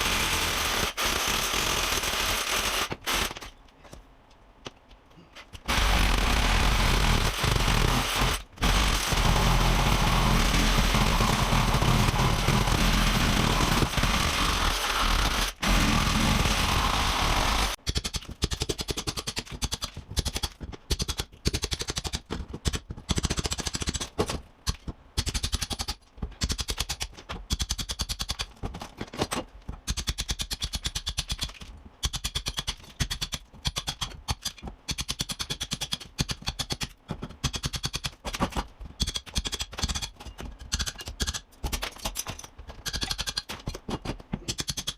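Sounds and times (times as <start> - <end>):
electric chipping hammer on tile: 5.7 - 17.8.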